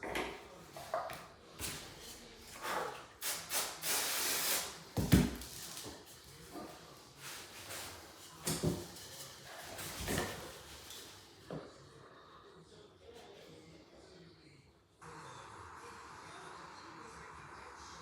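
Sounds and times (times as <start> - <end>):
knocks and rustles of boards: 5.0 - 6.8, 7.4 - 10.8.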